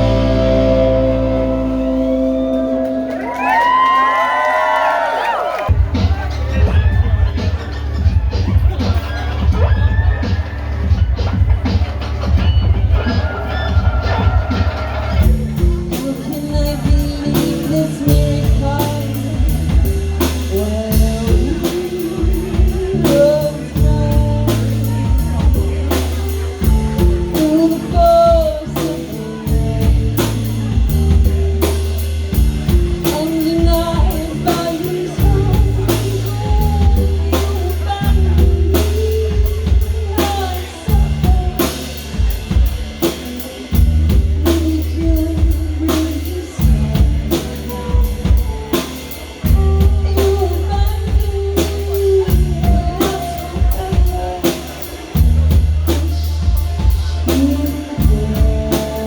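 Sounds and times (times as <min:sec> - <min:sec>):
person singing: 0:00.0 - 0:03.4, 0:15.2 - 0:59.0
guitar: 0:00.0 - 0:04.5, 0:05.7 - 0:59.0
drum kit beat: 0:00.0 - 0:05.0, 0:05.6 - 0:59.0
bass guitar: 0:00.0 - 0:59.0.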